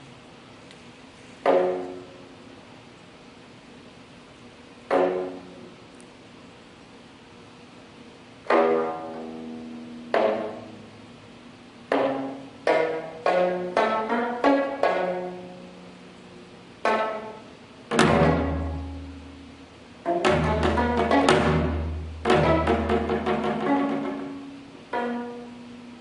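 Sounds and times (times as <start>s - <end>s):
plucked zither notes: 1.4s - 2.3s, 4.9s - 5.8s, 8.4s - 11.1s, 11.9s - 16.1s, 16.8s - 26.0s.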